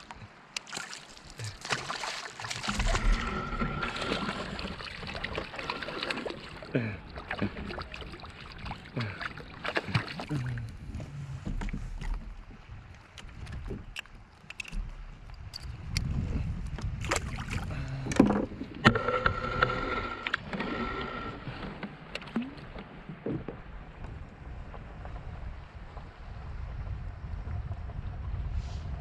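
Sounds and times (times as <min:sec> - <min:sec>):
water rushing: 0:00.0 - 0:13.3
wind noise: 0:02.5 - 0:09.2, 0:09.8 - 0:19.0, 0:23.1 - 0:29.0.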